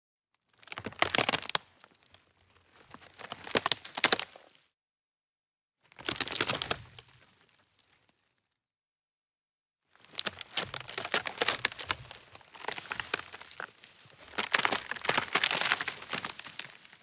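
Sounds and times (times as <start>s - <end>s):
dry wood snapping: 14.3s - 17.0s.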